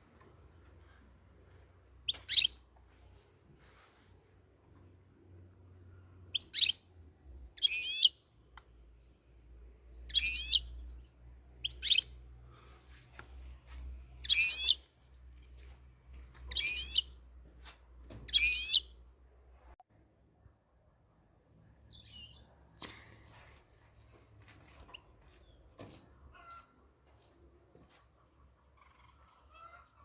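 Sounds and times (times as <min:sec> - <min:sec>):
finch singing: 0:02.0 - 0:02.7, 0:06.3 - 0:06.9, 0:09.9 - 0:12.2, 0:14.2 - 0:14.8, 0:16.5 - 0:17.1, 0:18.3 - 0:18.9.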